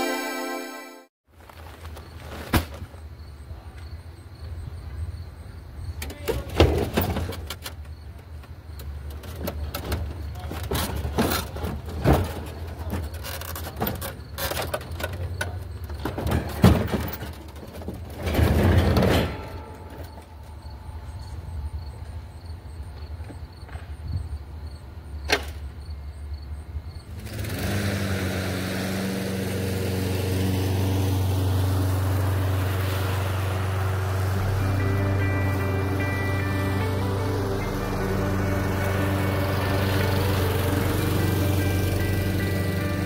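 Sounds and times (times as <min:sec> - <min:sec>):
clunks and knocks: 0:06.0 - 0:20.5
engine humming: 0:27.0 - 0:43.0.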